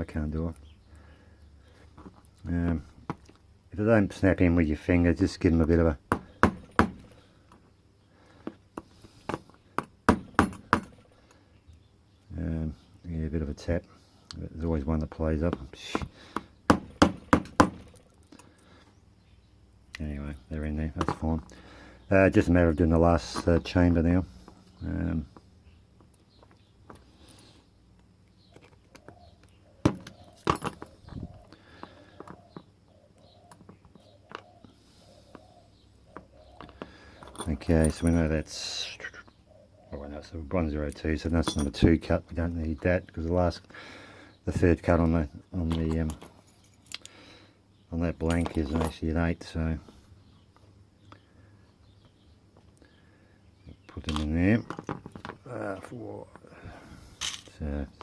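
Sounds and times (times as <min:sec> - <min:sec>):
small metal parts clicking: 0:45.7 - 0:47.2.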